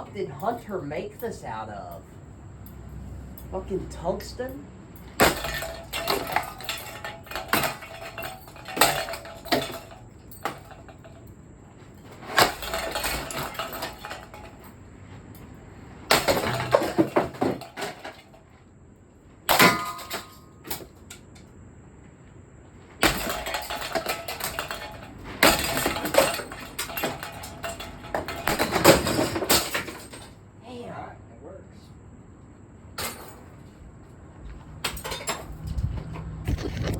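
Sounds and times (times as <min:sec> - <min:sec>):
metal ceiling fan being smashed: 0:05.0 - 0:14.8, 0:16.0 - 0:18.5, 0:19.4 - 0:21.4, 0:23.0 - 0:30.4, 0:32.9 - 0:33.5, 0:34.8 - 0:35.7.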